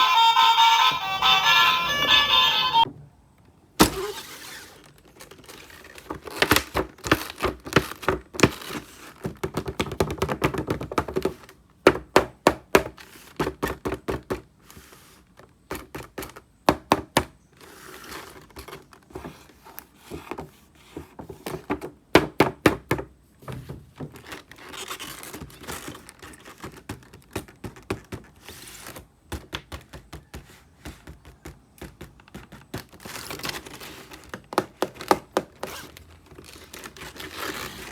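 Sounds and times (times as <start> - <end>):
packaging clicks and knocks: 5.0 - 11.4, 23.9 - 37.9.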